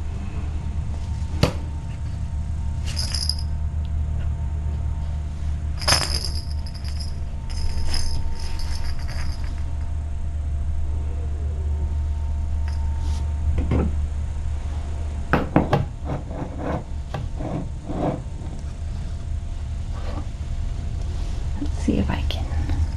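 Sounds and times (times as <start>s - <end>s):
steady low hum: 0.0s - 22.9s
small bell jingling: 2.9s - 3.6s, 5.8s - 9.6s.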